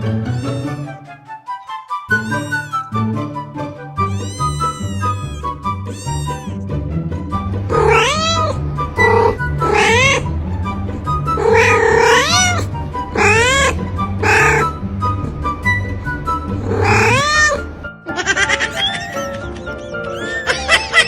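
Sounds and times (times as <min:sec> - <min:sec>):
background music: 0:00.0 - 0:21.0
cat meowing loudly: 0:00.3 - 0:00.9, 0:02.1 - 0:02.8, 0:04.1 - 0:06.6, 0:07.7 - 0:10.3, 0:11.4 - 0:14.8, 0:16.6 - 0:17.7.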